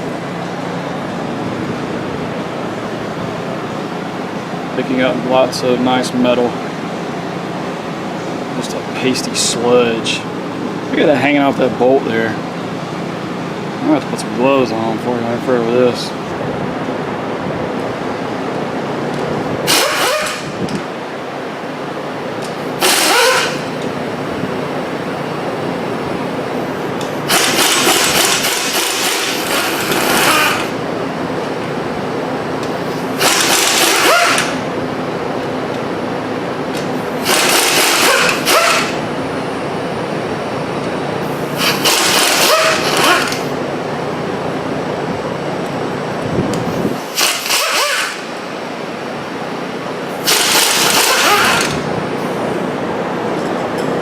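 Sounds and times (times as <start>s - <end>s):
steady shop hum: 0.0s - 54.0s
pneumatic air tool whining: 19.6s - 20.6s, 22.8s - 23.7s, 27.1s - 30.8s, 32.9s - 34.6s, 37.2s - 39.0s, 41.2s - 43.6s, 46.7s - 48.4s, 50.1s - 51.9s.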